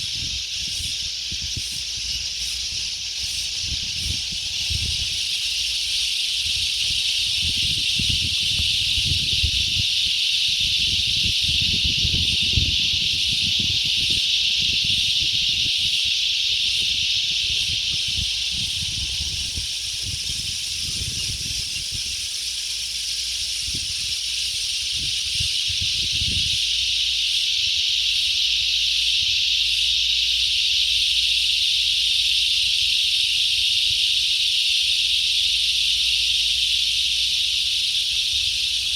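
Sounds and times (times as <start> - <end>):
wind buffeting microphone: 0.0 - 22.6, 23.5 - 26.8
insect chorus hissing: 0.0 - 38.9.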